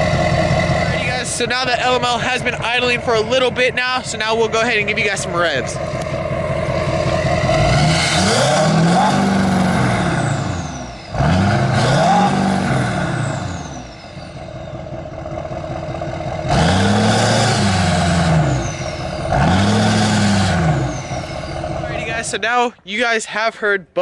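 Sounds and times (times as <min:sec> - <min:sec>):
diesel pickup engine revving: 0:00.0 - 0:22.6
turbo whistle: 0:18.3 - 0:22.2.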